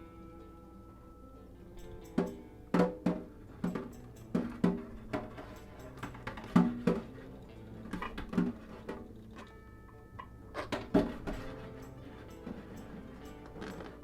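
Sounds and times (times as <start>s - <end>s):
plucked melodic notes: 0.0s - 8.6s
percussion: 0.0s - 14.0s.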